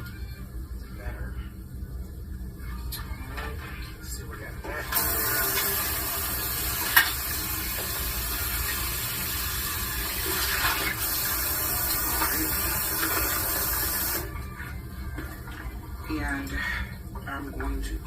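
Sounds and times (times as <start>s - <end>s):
tap water splashing into sink: 4.9s - 8.9s, 10.1s - 14.2s.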